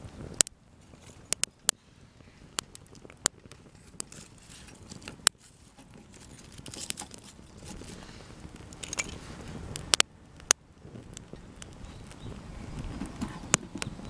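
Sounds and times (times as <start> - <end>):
campfire crackling: 0.0 - 14.0
twigs snapping: 2.6 - 8.0.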